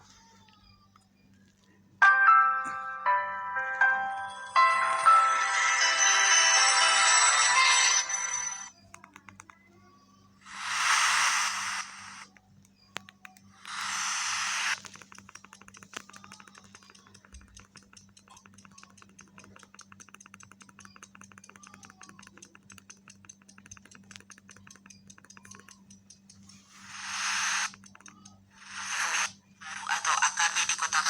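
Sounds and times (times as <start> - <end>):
radio-like hiss burst: 10.4 - 12.3, 13.6 - 14.8, 26.8 - 27.7, 28.6 - 30.7.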